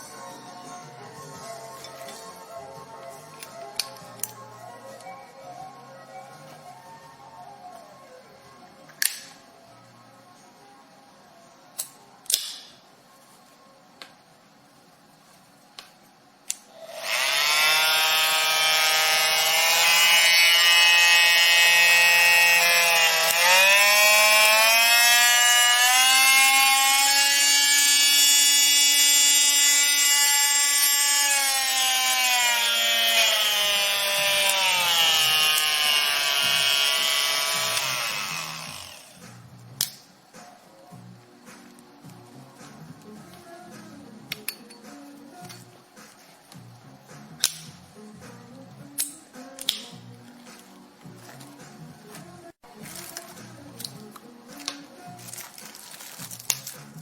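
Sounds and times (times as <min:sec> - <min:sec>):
oscillating multitool motor whine: 0:16.8 - 0:39.2.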